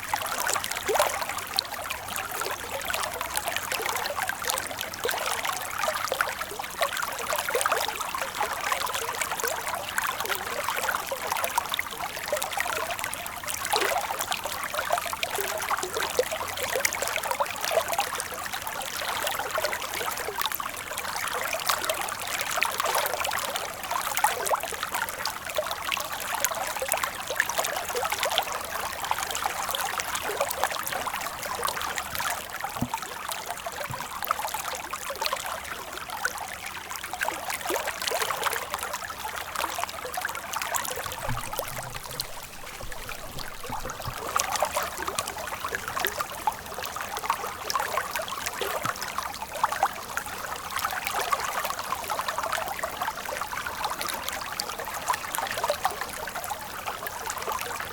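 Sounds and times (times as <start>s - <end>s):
stream trickling over stones: 0.0s - 57.9s.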